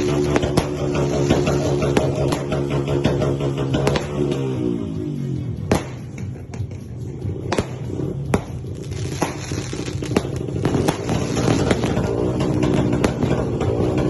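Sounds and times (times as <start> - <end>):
firework reports: 0.0 - 2.6, 7.5 - 13.4
firework crackling: 0.0 - 4.4, 7.4 - 14.0
steady low drone: 0.0 - 14.0.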